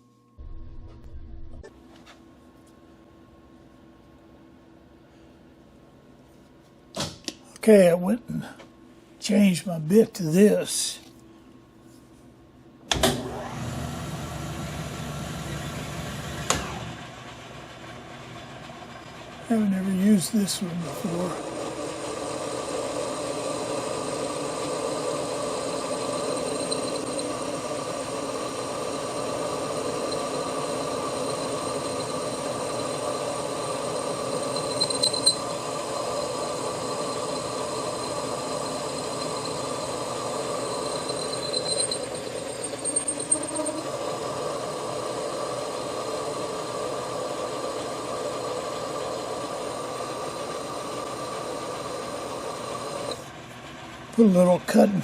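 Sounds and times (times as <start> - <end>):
metal lathe running: 13.2 - 55.0
high squeal from cutting: 26.0 - 32.4, 34.2 - 43.9.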